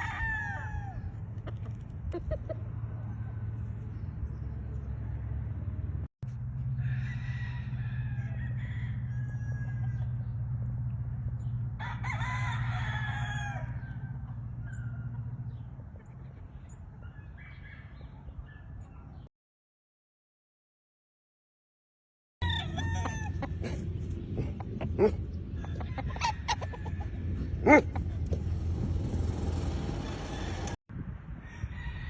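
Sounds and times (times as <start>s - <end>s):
roosters crowing: 0.0s - 1.4s, 6.5s - 10.6s, 11.4s - 15.7s, 17.0s - 18.8s, 22.4s - 28.8s, 29.8s - 32.0s.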